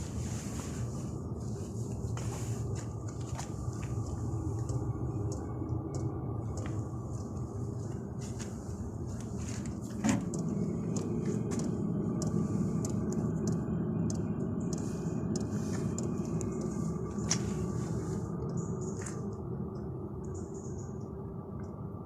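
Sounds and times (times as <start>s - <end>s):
air heater rumbling: 0.0s - 22.0s.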